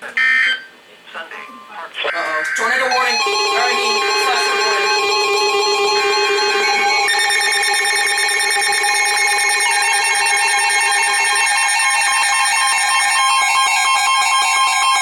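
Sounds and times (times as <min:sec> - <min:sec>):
weather alert radio alarms: 0:00.1 - 0:15.0
repeating beeps: 0:01.4 - 0:11.4
lower tone: 0:03.1 - 0:11.6.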